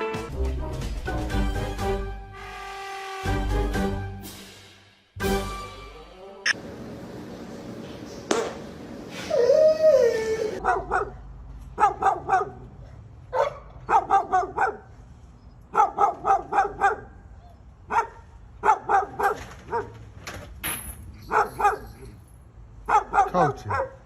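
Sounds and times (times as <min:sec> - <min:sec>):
dog barking: 0:10.6 - 0:11.2, 0:11.8 - 0:14.9, 0:15.7 - 0:17.2, 0:17.9 - 0:20.0, 0:21.3 - 0:22.0, 0:22.9 - 0:24.0.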